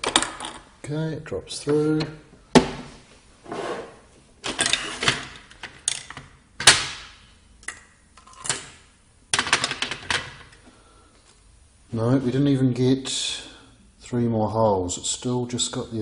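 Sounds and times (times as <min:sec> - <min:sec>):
scraping and rustling: 0:03.4 - 0:05.3.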